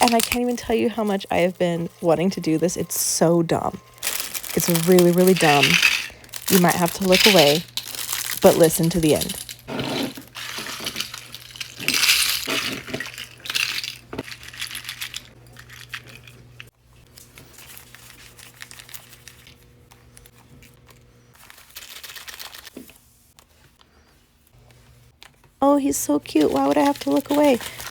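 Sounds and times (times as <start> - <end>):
tiny plastic eyes rattling: 0.0 - 1.2, 4.0 - 16.4, 21.6 - 22.7, 26.0 - 27.9.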